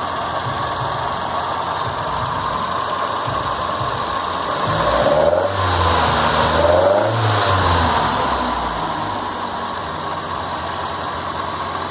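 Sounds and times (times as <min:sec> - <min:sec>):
car engine revving and idling: 0:00.0 - 0:11.9.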